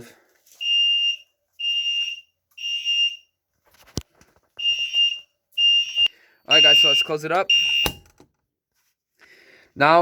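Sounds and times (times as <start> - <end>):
fire alarm horn beeping: 0.6 - 3.3, 4.6 - 8.0.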